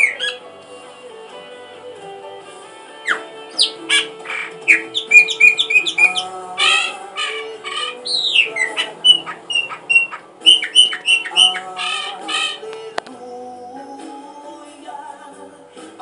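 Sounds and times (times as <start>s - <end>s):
bird chirping and squawking: 0.0s - 0.5s, 3.0s - 12.7s
background music with held notes: 0.0s - 16.0s.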